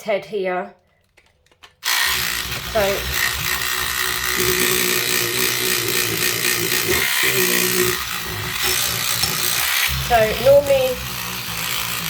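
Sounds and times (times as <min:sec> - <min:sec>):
cleaning brush motor buzzing: 0:01.8 - 0:12.0.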